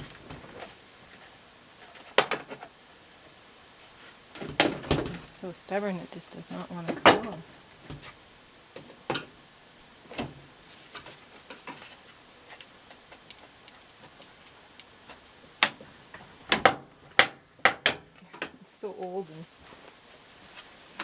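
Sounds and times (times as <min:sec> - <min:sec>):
sharp clicks on brittle plastic: 0:16.5 - 0:18.1.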